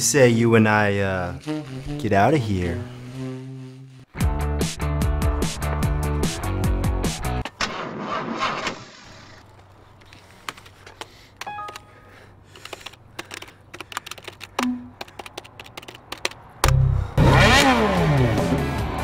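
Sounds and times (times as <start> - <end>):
music: 4.1 - 7.4, 18.0 - 19.0
keyboard keys clicking: 10.5 - 16.4.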